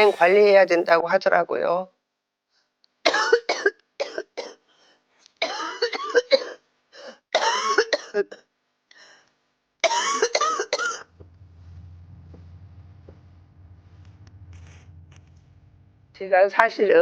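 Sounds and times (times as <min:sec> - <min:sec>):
woman coughing: 0:07.4 - 0:08.3.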